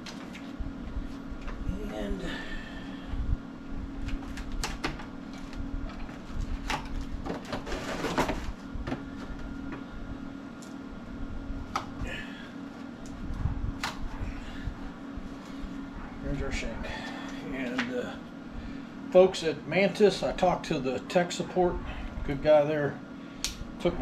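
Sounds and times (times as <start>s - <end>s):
steady low hum: 0.0s - 24.0s
scraping rustle: 7.4s - 8.6s.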